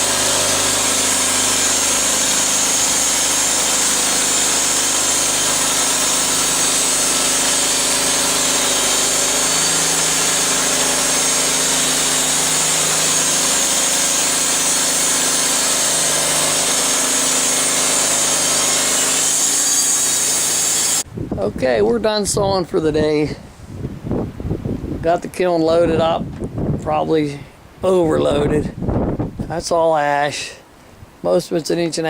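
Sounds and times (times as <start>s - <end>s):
saw blade cutting log hiss: 0.0s - 21.0s
sawmill engine hum: 0.0s - 21.1s.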